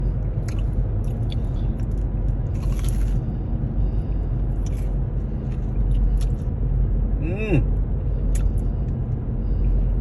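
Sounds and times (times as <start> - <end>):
steady low rumble: 0.0 - 10.0
crunchy biting and chewing: 0.4 - 3.4, 4.4 - 6.6.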